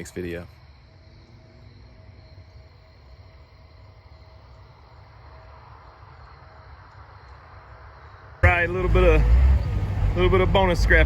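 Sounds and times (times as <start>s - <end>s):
crickets trilling: 0.0s - 8.6s
low steady rumble: 8.4s - 11.0s.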